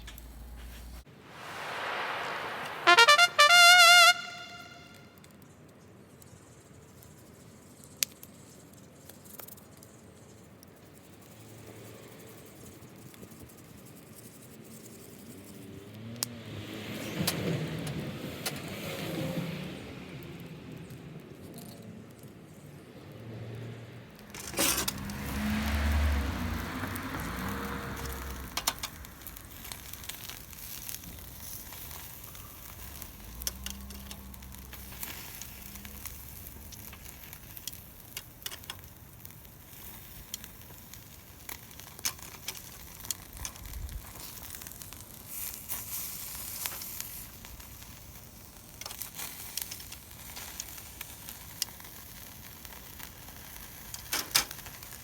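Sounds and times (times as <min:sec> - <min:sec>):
meat sizzling on a grill: 0:24.2 - 0:55.0
wood fire popping and crackling: 0:24.2 - 0:55.0.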